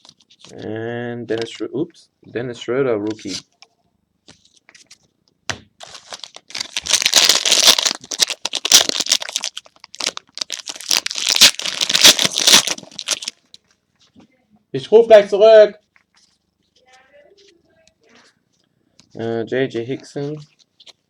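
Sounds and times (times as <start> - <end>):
plastic wrapper tearing and crinkling: 5.8 - 13.5.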